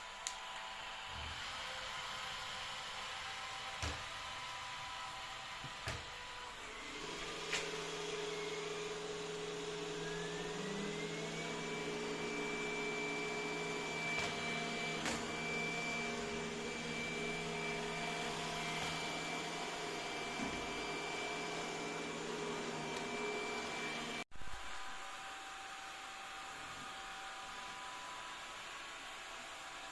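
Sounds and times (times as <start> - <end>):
robot vacuum running: 0.8 - 24.2.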